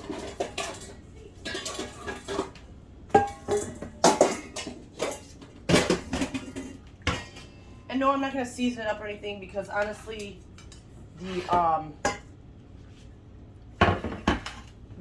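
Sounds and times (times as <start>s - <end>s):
dishes and cookware clattering: 0.0s - 7.7s, 9.7s - 12.3s, 13.8s - 14.8s.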